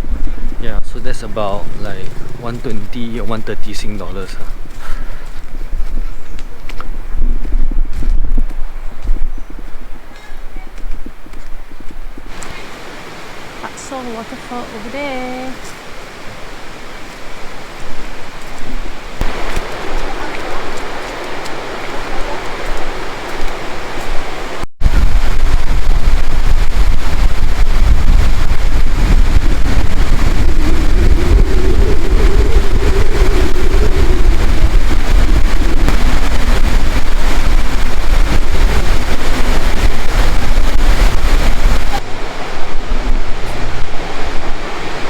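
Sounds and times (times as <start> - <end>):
wind buffeting microphone: 0.0 - 45.0
waterfall rushing: 12.3 - 18.2, 19.0 - 45.0
heavy low rumble: 19.2 - 45.0.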